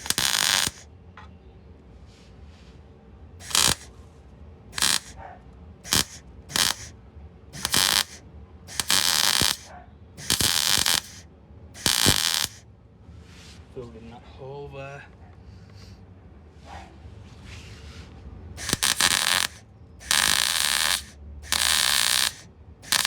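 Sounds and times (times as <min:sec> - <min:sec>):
electric welder crackling: 0:00.0 - 0:00.8, 0:03.4 - 0:03.9, 0:04.8 - 0:05.2, 0:05.9 - 0:06.9, 0:07.6 - 0:11.2, 0:11.8 - 0:12.6, 0:18.6 - 0:23.0.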